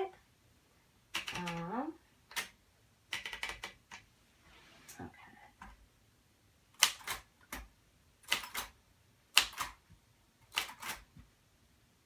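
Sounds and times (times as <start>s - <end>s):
typewriter keys clacking: 3.1s - 3.8s, 8.3s - 8.7s, 10.5s - 11.0s.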